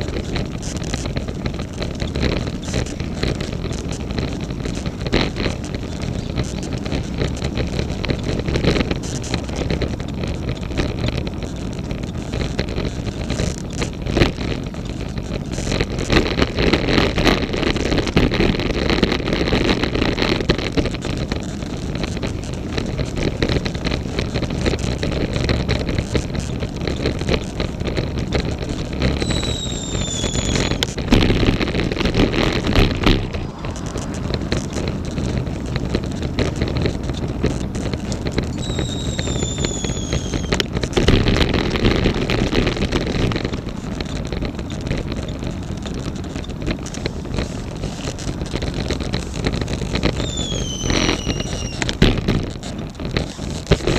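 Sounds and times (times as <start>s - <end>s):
tyre and road noise: 0.0s - 53.9s
wind rushing on microphone: 0.0s - 53.9s
high squeal falling in pitch: 29.2s - 30.8s, 38.6s - 40.6s, 50.2s - 51.8s.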